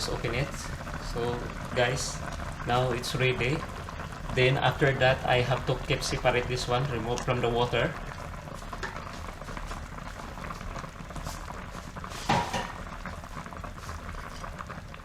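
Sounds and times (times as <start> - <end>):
pot bubbling with fine crackle: 0.0 - 15.0
utensil knocking on pot: 12.3 - 12.8.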